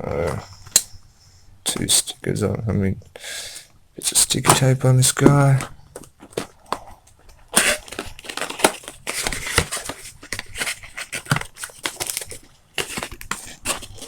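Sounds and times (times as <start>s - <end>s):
cardboard box crinkling and scraping: 4.3s - 14.0s.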